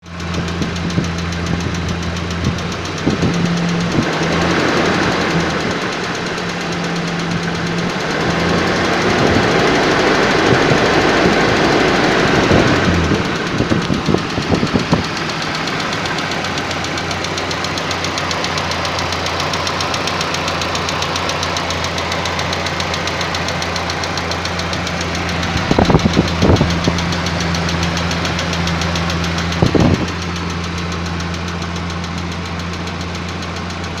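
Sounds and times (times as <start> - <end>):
clattering engine knocks: 0.0 - 34.0
engine idling: 0.0 - 34.0
rapid valve lifter ticking: 0.0 - 34.0.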